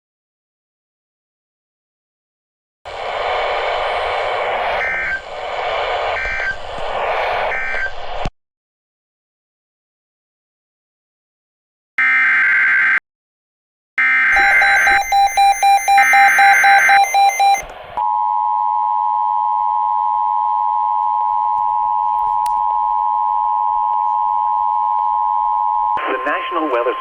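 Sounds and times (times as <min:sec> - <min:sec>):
fast beeping: 0:14.4 - 0:17.6
warbling digital data tones: 0:14.4 - 0:17.6
two-tone attention signal: 0:14.4 - 0:22.1.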